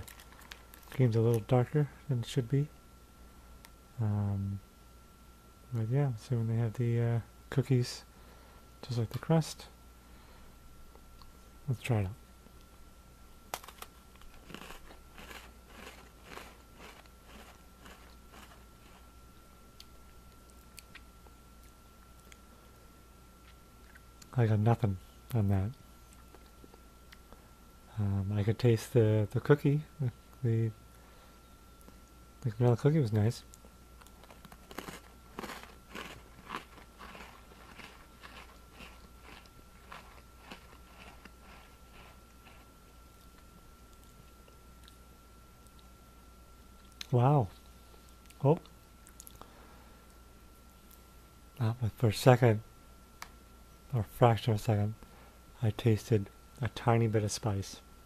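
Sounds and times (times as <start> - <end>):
chewing crunchy cookie: 0.0 - 1.4, 13.5 - 22.5, 26.0 - 27.4, 33.4 - 46.0, 46.7 - 49.5.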